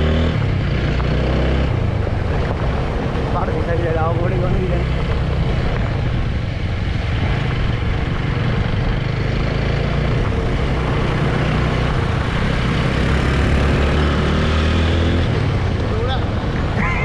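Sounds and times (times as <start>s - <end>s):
wind and road noise: 0.0s - 17.0s.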